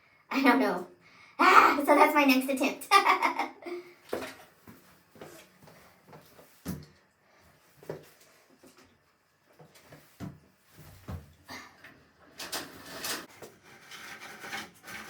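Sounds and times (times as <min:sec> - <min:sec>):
clothesline lines rubbing and scraping: 0:09.6 - 0:15.0.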